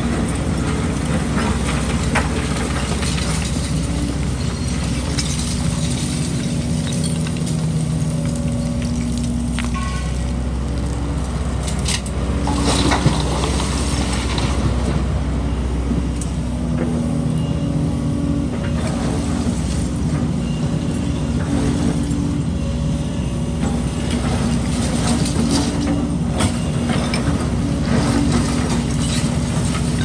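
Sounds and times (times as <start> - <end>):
diesel engines running: 0.0 - 30.0
concrete rubble clattering: 0.6 - 10.2.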